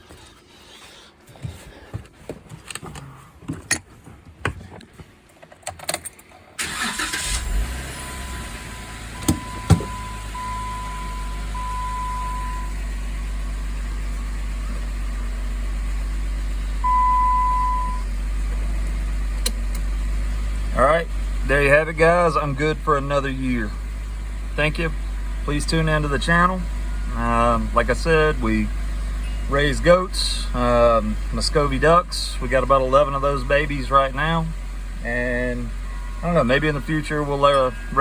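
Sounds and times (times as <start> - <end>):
car engine idling: 6.2 - 38.0
short beep: 8.0 - 12.8, 16.8 - 18.1
electronic chime tone: 16.8 - 18.0.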